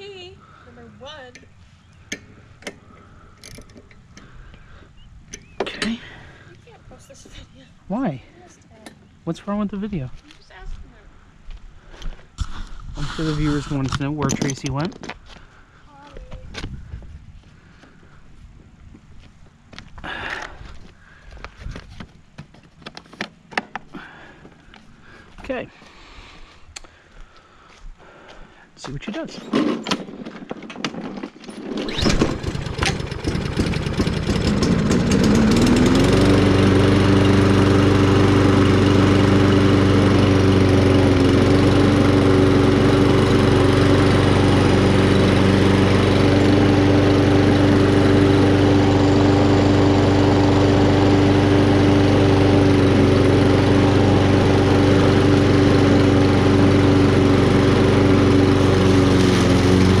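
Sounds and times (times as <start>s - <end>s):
mower engine running: 0.0s - 10.6s, 12.4s - 14.9s, 23.7s - 25.3s, 29.2s - 60.0s
pull-start cord rattle: 29.4s - 36.3s.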